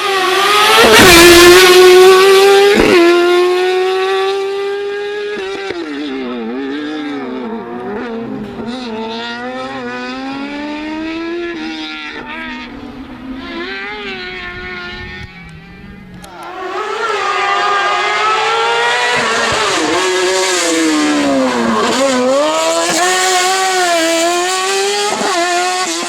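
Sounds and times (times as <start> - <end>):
race car engine revving: 16.2 - 26.0.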